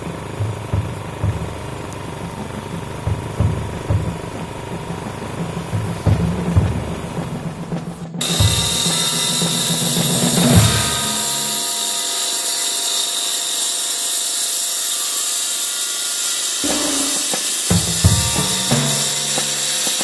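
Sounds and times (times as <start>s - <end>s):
background music with drum beats: 0.0s - 11.6s, 16.6s - 20.0s
generator running with high whine: 0.0s - 14.1s, 16.4s - 20.0s.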